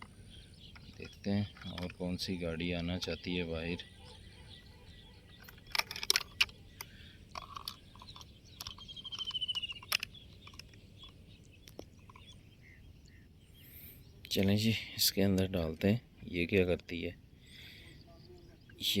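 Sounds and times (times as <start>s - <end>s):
low steady background noise: 0.0s - 19.0s
plastic toy vehicles clicking: 0.7s - 2.2s, 5.3s - 11.8s.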